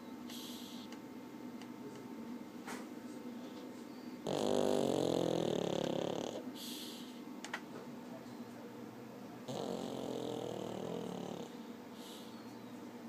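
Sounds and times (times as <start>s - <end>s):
dog snoring: 0.3s - 0.9s, 4.2s - 7.1s, 9.5s - 12.4s
hissing breath: 6.6s - 7.2s, 11.9s - 12.6s.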